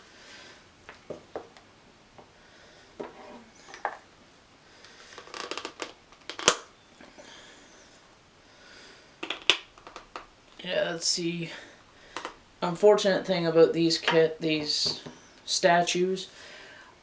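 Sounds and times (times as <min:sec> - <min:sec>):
plastic parts rustling and knocking: 0:05.0 - 0:06.6, 0:09.2 - 0:10.3, 0:12.1 - 0:12.4.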